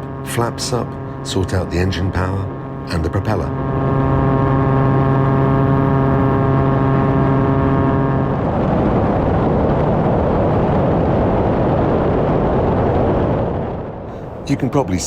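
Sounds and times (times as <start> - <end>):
plane engine and propeller droning: 0.0 - 15.0.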